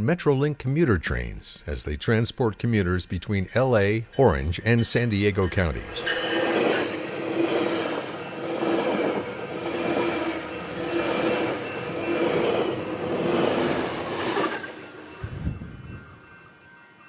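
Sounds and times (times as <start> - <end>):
passenger train passing on rails: 4.1 - 17.0.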